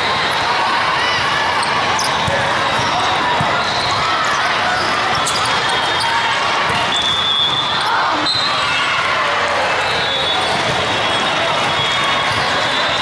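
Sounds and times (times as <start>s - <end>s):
many voices in a hall: 0.0s - 13.0s
volleyballs hit and bouncing: 0.3s - 7.9s, 10.4s - 12.7s.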